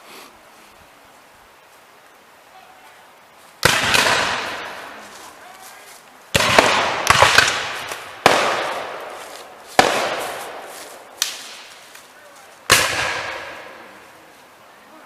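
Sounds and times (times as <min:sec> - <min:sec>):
muskets firing with echo: 0:03.6 - 0:04.9, 0:06.3 - 0:11.7, 0:12.7 - 0:14.0.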